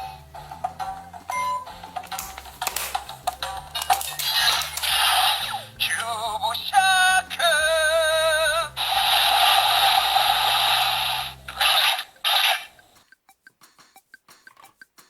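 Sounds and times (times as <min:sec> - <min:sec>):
electronic hissing blast: 0:08.8 - 0:12.8.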